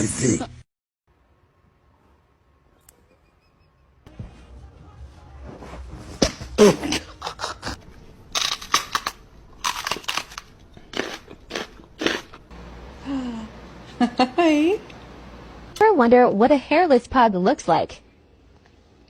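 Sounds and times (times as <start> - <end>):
crisp crunching or snipping: 8.3 - 12.4.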